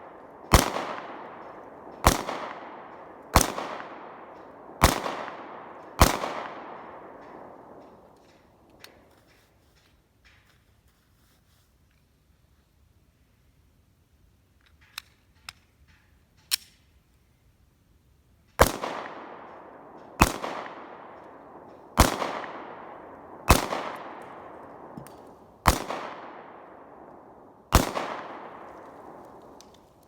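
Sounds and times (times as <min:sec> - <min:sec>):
pistol shots with echo: 0:00.0 - 0:08.7, 0:18.6 - 0:30.0.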